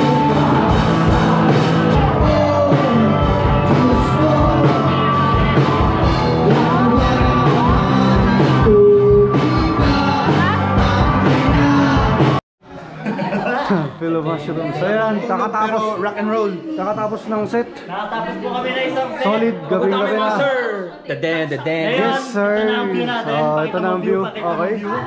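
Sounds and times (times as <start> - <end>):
drums keeping steady beat: 0.0 - 12.4
person singing: 0.0 - 12.4
rock band playing live: 0.0 - 12.4
sustained guitar: 0.0 - 12.4.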